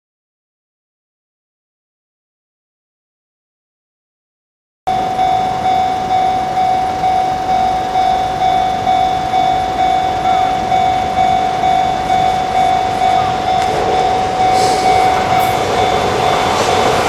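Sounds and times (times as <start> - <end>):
level crossing warning bell: 4.9 - 17.0.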